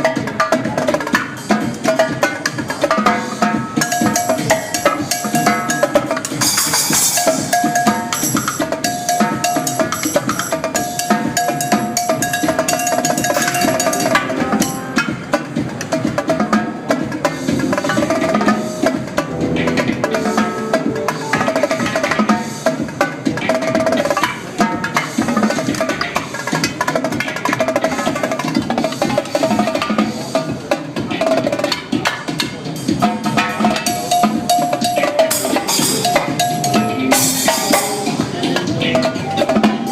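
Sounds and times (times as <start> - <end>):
drum kit playing: 0.0 - 39.9
electronic dance music: 11.2 - 15.7, 17.3 - 22.6.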